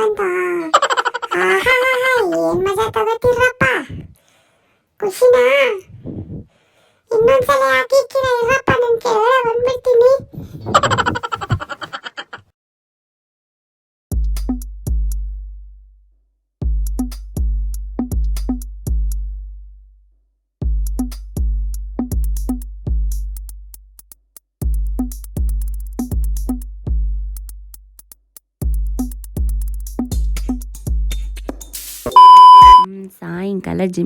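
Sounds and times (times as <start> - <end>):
electronic drum machine beat: 20.6 - 32.9.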